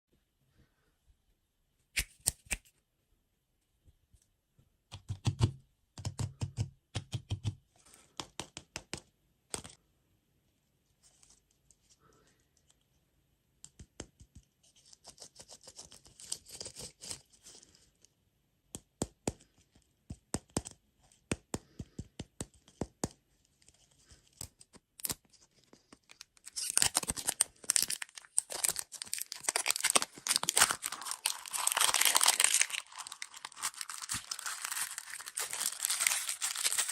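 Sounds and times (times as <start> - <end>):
food packaging crinkling and tearing: 26.0 - 36.9.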